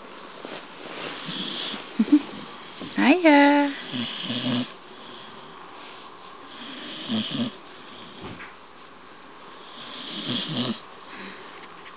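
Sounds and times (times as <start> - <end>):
dog snoring: 1.2 - 3.1, 3.7 - 5.7, 6.5 - 8.3, 9.5 - 10.9.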